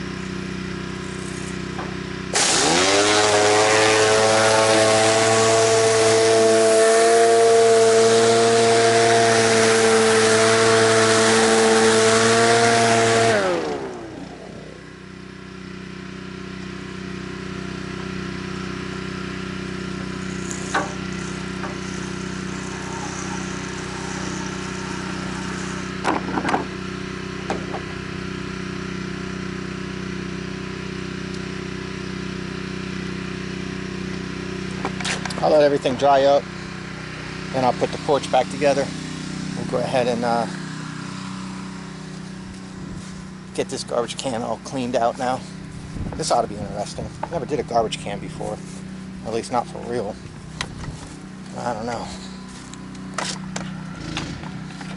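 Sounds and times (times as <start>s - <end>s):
pressure washer engine running: 0.0s - 54.9s
water spray hissing: 20.2s - 26.0s.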